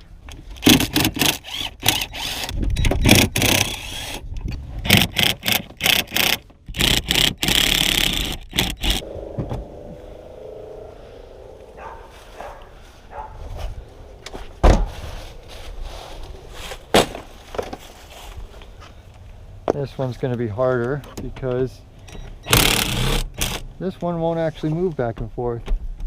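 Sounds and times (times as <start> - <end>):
rustling: 9.5 - 19.4.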